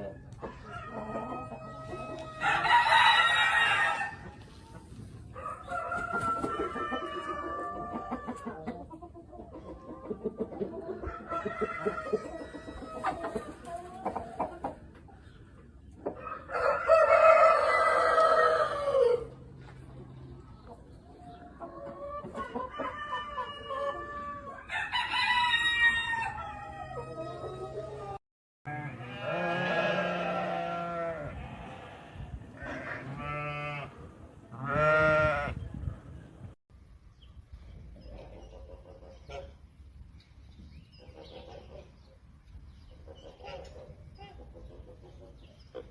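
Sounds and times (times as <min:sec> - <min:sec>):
chickens clucking: 0:00.0 - 0:28.2, 0:37.3 - 0:45.9
rooster crowing: 0:00.7 - 0:04.2
sheep bleating: 0:28.7 - 0:33.9.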